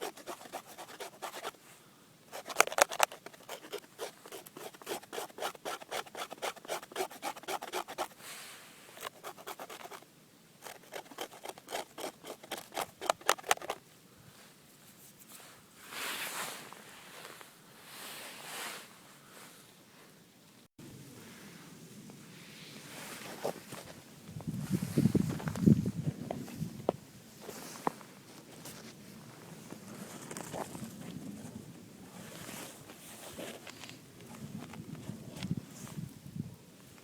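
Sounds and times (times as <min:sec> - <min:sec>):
knife blade scraping wood: 0:00.0 - 0:01.6, 0:02.3 - 0:08.2, 0:09.0 - 0:10.0, 0:10.6 - 0:13.8.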